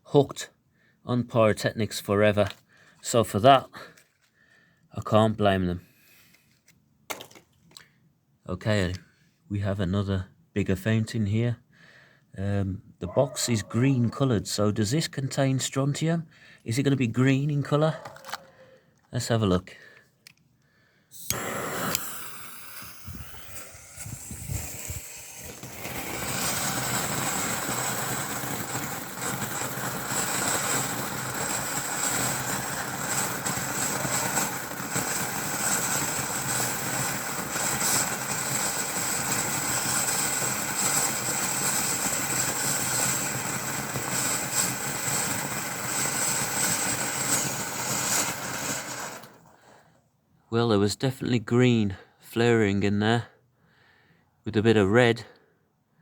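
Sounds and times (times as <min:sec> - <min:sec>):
firework fountain hissing: 0:21.1 - 0:49.6.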